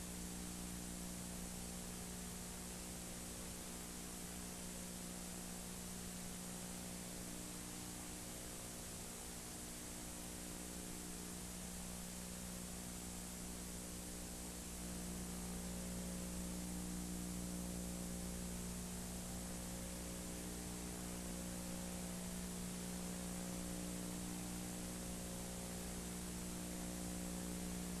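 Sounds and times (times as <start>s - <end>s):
faint electrical hum: 0.0s - 28.0s.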